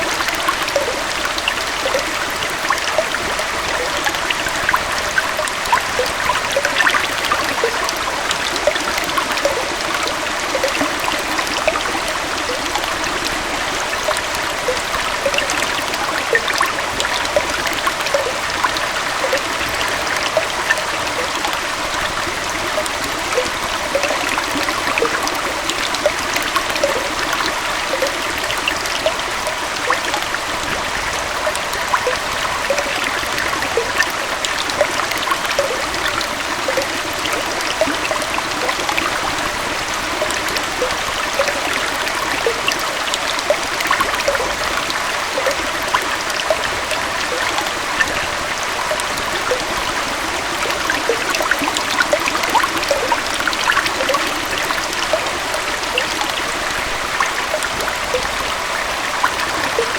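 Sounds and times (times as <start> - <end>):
stream gurgling: 0.0 - 59.9.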